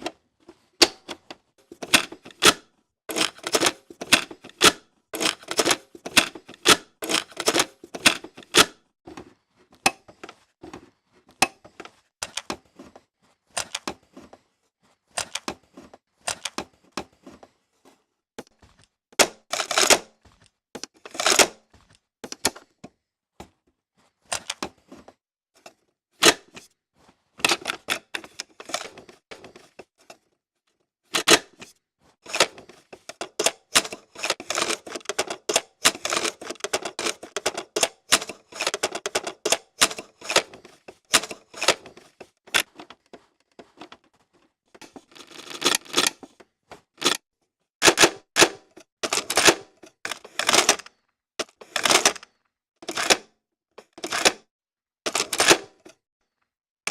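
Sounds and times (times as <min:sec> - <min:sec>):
plastic cassette clicks and clacks: 0:00.8 - 0:09.2, 0:11.4 - 0:12.7, 0:13.5 - 0:14.1, 0:15.1 - 0:15.6, 0:16.2 - 0:16.8, 0:19.2 - 0:20.1, 0:20.8 - 0:21.6, 0:22.2 - 0:22.8, 0:24.3 - 0:24.8, 0:25.6 - 0:26.7, 0:27.4 - 0:30.2, 0:31.1 - 0:44.1, 0:44.8 - 0:47.2, 0:47.8 - 0:54.5, 0:55.1 - 0:56.0.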